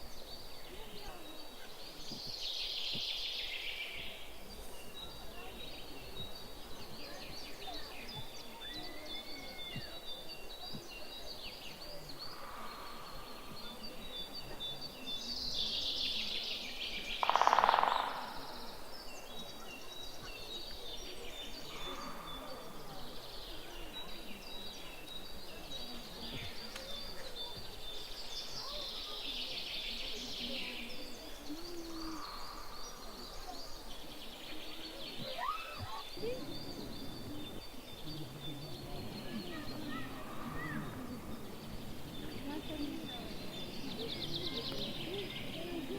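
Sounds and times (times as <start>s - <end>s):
birds singing: 0.0s - 45.9s
loud low bird call: 17.2s - 18.8s.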